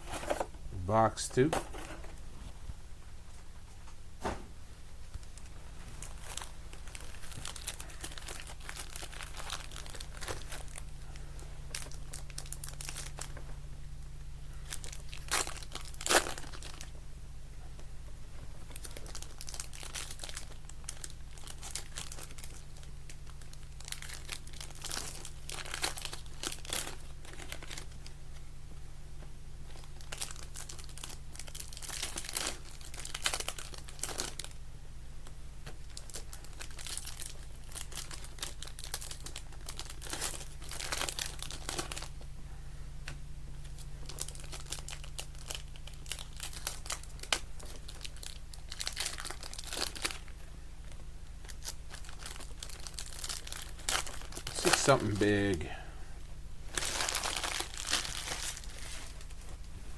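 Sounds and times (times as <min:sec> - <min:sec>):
steady low hum: 0:00.0 - 0:59.9
card pack wrappers crinkling: 0:05.1 - 0:13.4, 0:14.5 - 0:16.9, 0:18.6 - 0:28.1, 0:29.7 - 0:34.6, 0:35.6 - 0:42.2, 0:43.6 - 0:55.7, 0:56.6 - 0:59.7.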